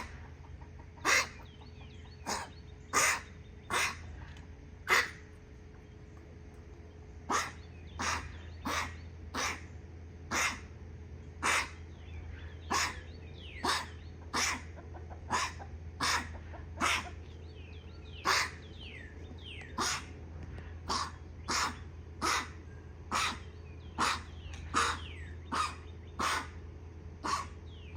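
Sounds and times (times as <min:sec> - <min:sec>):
animal coughing: 0:00.9 - 0:01.5, 0:02.2 - 0:04.2, 0:04.9 - 0:05.3, 0:07.3 - 0:09.7, 0:10.3 - 0:10.7, 0:12.6 - 0:17.2, 0:20.7 - 0:26.6, 0:27.2 - 0:27.6.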